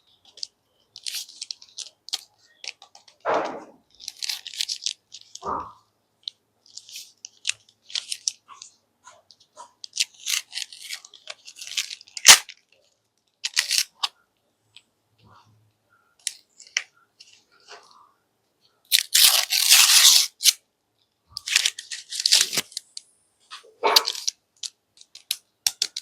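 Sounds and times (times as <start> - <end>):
plastic wrappers crinkling: 0.2 - 14.1, 18.9 - 20.6, 21.3 - 26.0.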